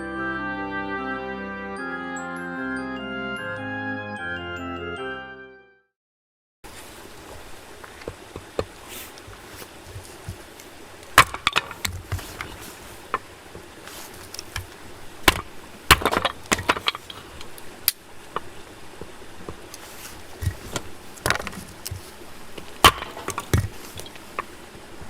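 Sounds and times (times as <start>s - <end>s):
campfire crackling: 6.7s - 25.0s
soft steady hiss: 6.7s - 25.0s.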